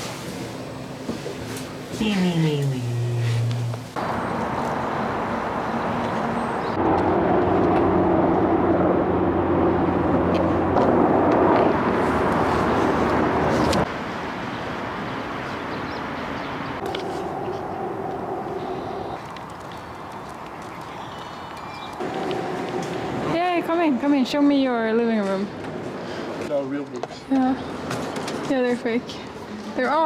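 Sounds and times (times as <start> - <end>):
vehicle running with low hum: 2.4 - 13.9, 16.6 - 19.6, 22.0 - 23.4.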